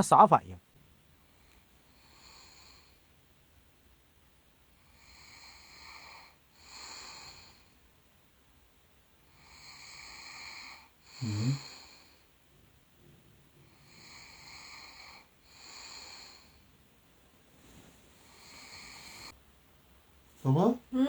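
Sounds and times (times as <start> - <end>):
woman snoring: 5.0 - 7.7, 9.4 - 12.2, 13.8 - 16.5, 18.3 - 19.4
woman snorting: 11.2 - 11.7.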